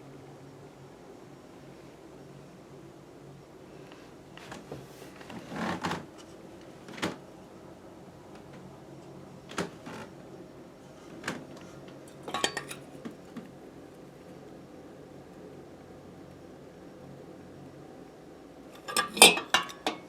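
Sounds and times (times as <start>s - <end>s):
low room hiss: 0.0s - 20.0s
light metallic clinks: 12.2s - 12.8s, 18.8s - 20.0s.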